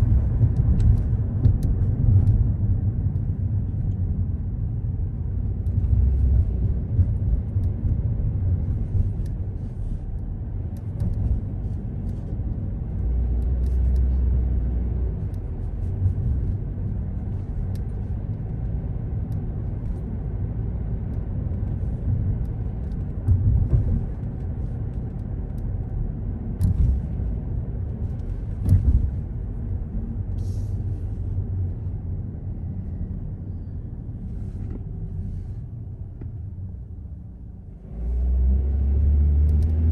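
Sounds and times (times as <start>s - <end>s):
car engine and tyres rumbling: 0.0s - 39.9s.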